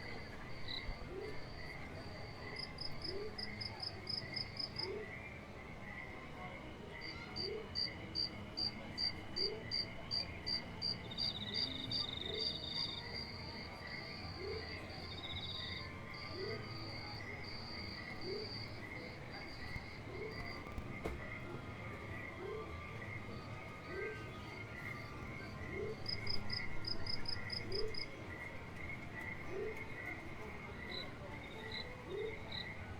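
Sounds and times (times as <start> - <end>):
crickets chirping: 0.0 - 4.9, 7.8 - 20.8, 25.4 - 28.1, 30.9 - 32.7.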